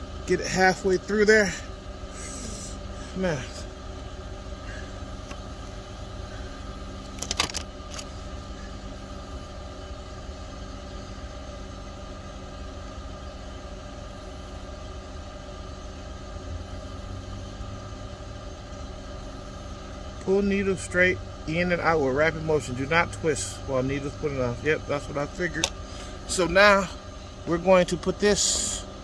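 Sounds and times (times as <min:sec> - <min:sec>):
car engine idling: 0:00.0 - 0:29.0.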